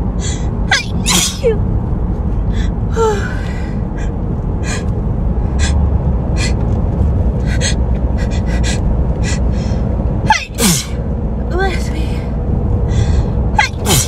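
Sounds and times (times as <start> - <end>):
steady low rumble: 0.0 - 14.0
person sniffing and gasping: 7.5 - 9.8.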